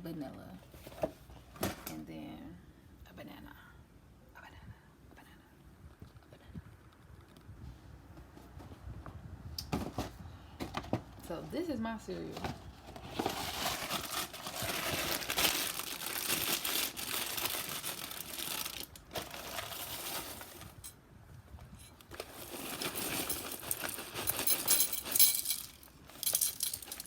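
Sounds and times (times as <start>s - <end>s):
plastic bag crinkling: 13.0s - 20.9s, 22.0s - 27.0s.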